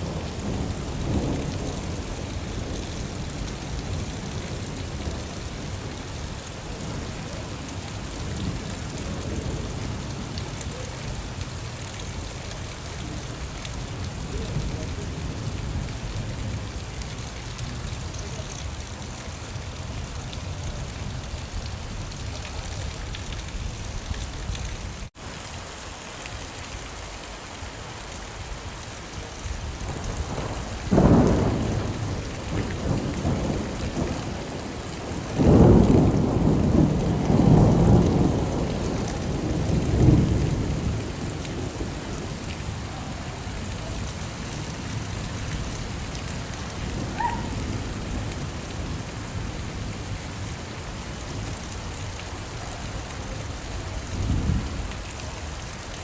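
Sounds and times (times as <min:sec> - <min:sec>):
thunder rumbling: 0:00.0 - 0:06.0, 0:29.6 - 0:50.5
steady rain: 0:00.0 - 0:56.0.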